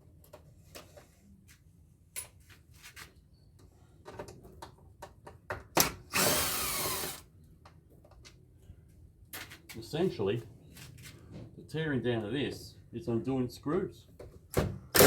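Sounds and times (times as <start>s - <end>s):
power drill backing out screw: 5.8s - 7.2s.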